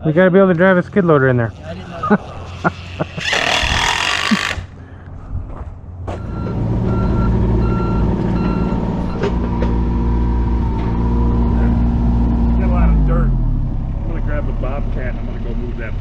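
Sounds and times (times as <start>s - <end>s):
diesel engine running: 0.7s - 16.0s
backup alarm beeping: 6.1s - 9.2s.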